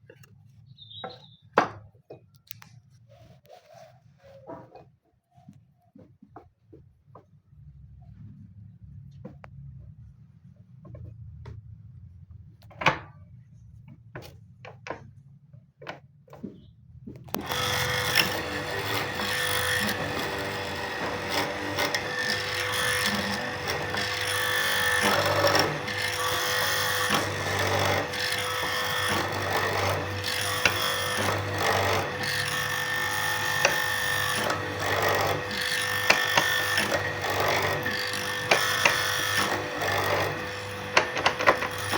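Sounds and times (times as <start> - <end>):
power drill boring into wood: 17.4 - 41.9.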